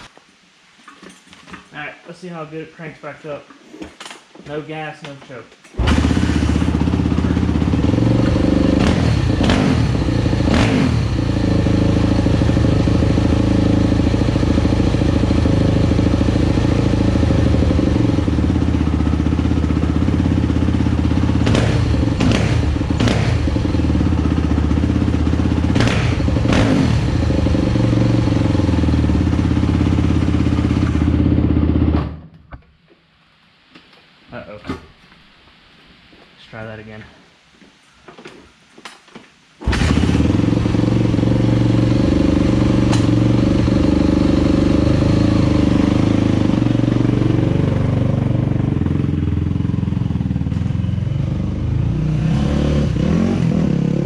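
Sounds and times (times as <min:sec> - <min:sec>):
motorcycle engine idling: 0:05.8 - 0:32.2, 0:39.8 - 0:52.0
engine throttle blips: 0:05.8 - 0:32.3.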